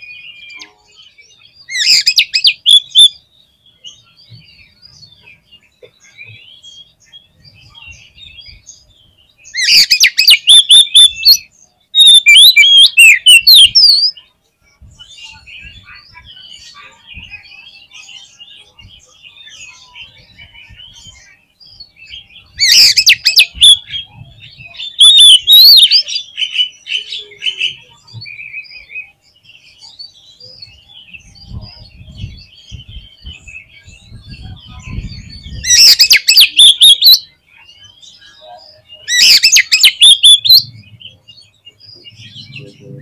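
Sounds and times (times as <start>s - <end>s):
bird chattering notes: 9.6s - 11.4s, 34.7s - 37.2s, 39.0s - 43.0s.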